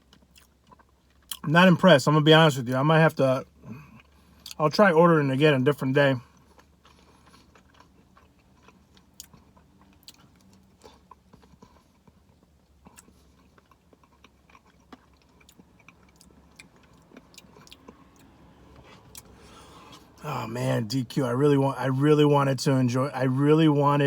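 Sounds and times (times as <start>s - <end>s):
person chewing with mouth clicks: 0.0s - 1.5s, 6.3s - 20.2s.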